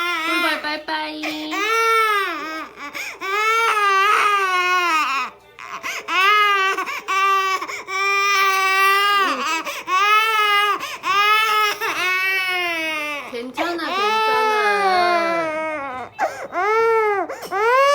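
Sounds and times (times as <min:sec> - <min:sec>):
baby crying hard: 0:01.3 - 0:17.9
baby gasping breaths: 0:02.9 - 0:03.2, 0:10.8 - 0:11.1.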